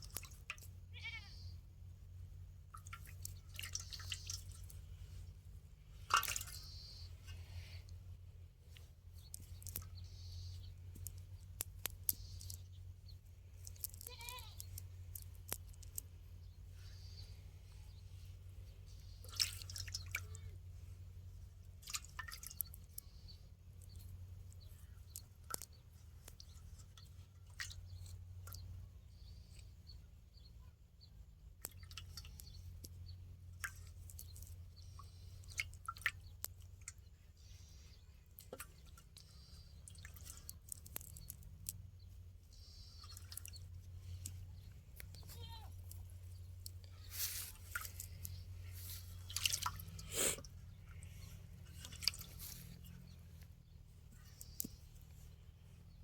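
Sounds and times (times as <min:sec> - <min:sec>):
water dripping and splashing: 0:00.0 - 0:00.7, 0:02.7 - 0:05.2, 0:05.8 - 0:07.0, 0:18.8 - 0:20.5, 0:21.6 - 0:23.0, 0:25.1 - 0:28.6, 0:31.6 - 0:37.6, 0:38.3 - 0:41.9, 0:42.5 - 0:46.0, 0:46.6 - 0:53.1
low steady hum: 0:00.0 - 0:56.0.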